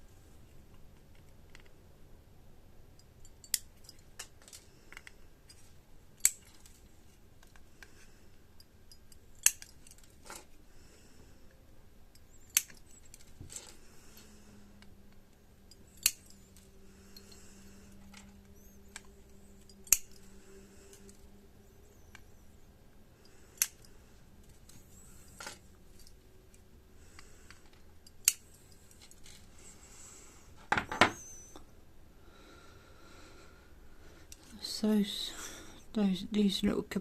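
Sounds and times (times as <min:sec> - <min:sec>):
small clicks and handling: 0:12.4 - 0:15.3, 0:27.2 - 0:29.5.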